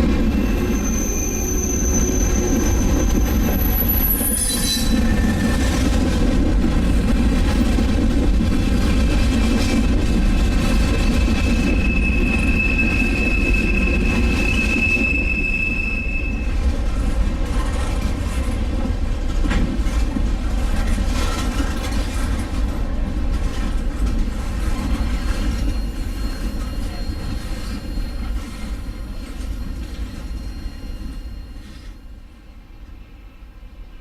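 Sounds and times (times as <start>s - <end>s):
freight train rumble and clatter: 0.0s - 34.0s
high wheel squeal: 0.2s - 5.7s, 10.2s - 16.7s, 24.6s - 32.1s.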